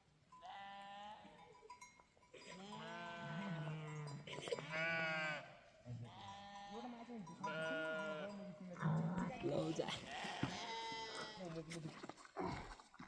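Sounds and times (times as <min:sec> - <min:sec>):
sheep bleating: 0:00.4 - 0:01.4, 0:02.4 - 0:11.6.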